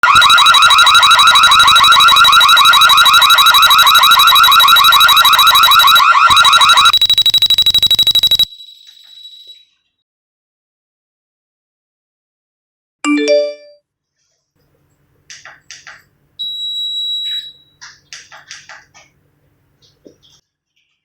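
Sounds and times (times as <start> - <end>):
rapidly warbling alarm siren: 0.0 - 8.5.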